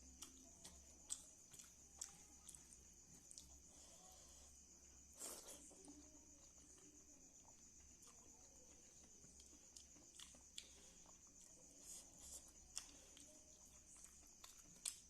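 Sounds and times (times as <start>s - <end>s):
faint high-pitched hiss: 0.0s - 15.0s
mouth clicks while chewing: 0.1s - 3.6s.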